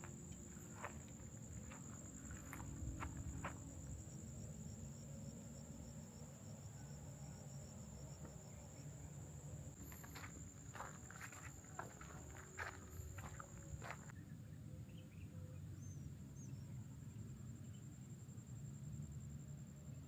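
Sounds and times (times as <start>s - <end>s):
insect chirping in fast pulses: 0.0s - 14.1s
insects droning high-pitched: 0.0s - 14.1s.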